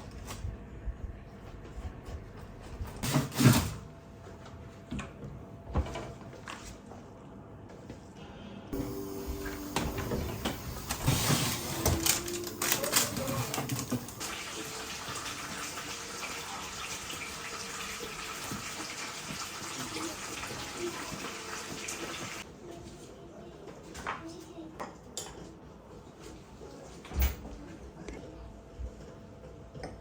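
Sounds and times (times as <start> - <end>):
tap water running into sink: 11.9 - 22.4.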